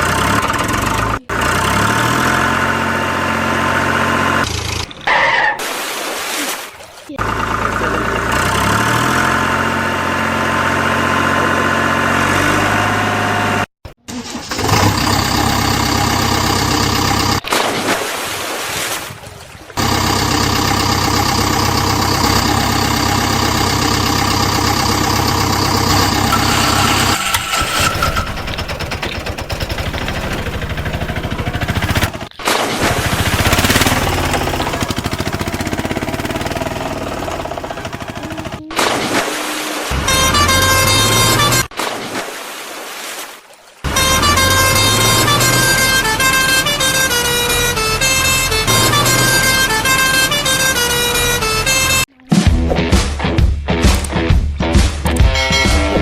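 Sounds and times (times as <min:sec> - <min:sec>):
engine idling: 0:00.0 - 0:05.1, 0:07.2 - 0:13.7, 0:14.5 - 0:17.4, 0:19.8 - 0:38.8, 0:39.9 - 0:41.7, 0:43.9 - 0:52.1.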